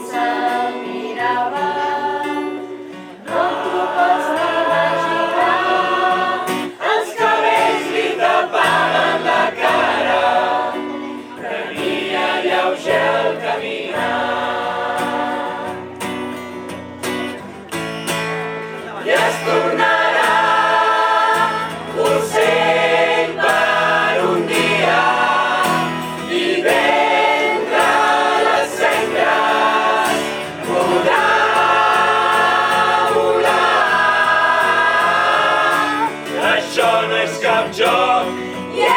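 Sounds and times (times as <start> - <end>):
choir singing: 0.0 - 16.2, 18.8 - 38.9.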